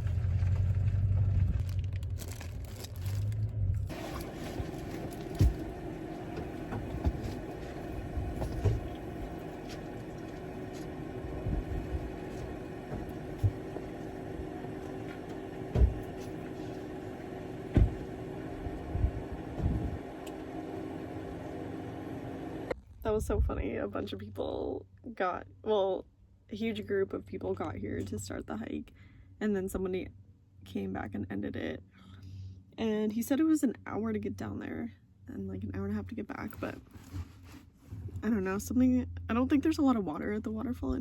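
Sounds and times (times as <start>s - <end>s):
vehicle running hum: 0.0s - 24.1s
short soft thumps: 14.9s - 16.9s, 17.7s - 20.0s.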